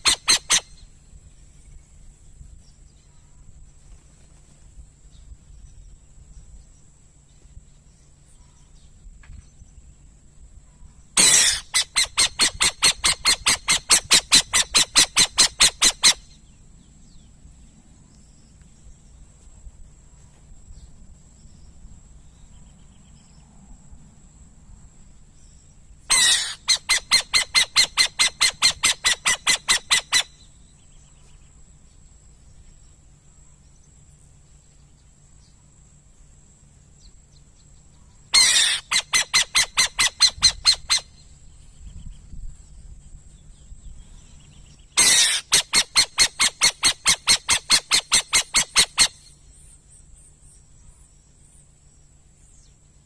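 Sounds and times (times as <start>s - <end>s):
owl calling harsh repeated notes: 0.0s - 0.8s, 11.2s - 16.4s, 26.1s - 30.5s, 38.4s - 41.2s, 45.0s - 49.3s.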